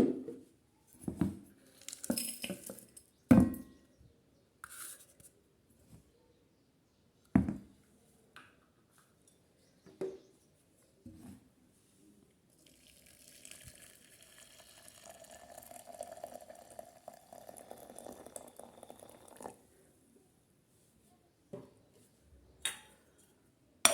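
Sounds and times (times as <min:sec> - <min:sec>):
water running into vessel: 0:12.6 - 0:19.6.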